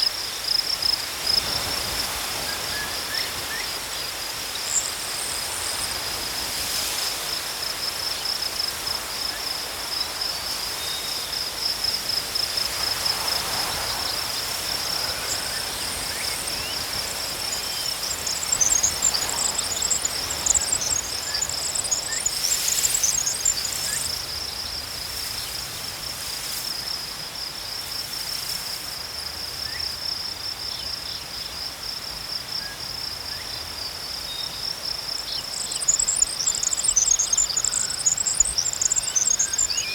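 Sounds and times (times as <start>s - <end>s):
insects trilling: 0.0s - 39.9s
small birds twittering: 13.8s - 24.2s, 35.2s - 39.9s.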